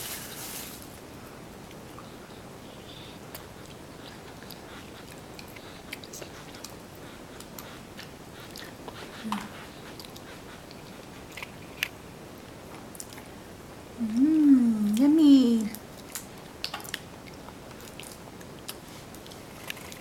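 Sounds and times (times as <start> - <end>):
low room hiss: 0.0 - 20.0
toddler chewing food: 1.7 - 12.0, 14.8 - 20.0.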